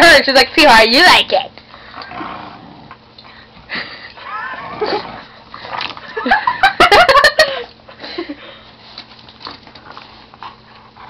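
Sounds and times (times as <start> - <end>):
person giggling: 3.7 - 5.3, 6.0 - 8.6.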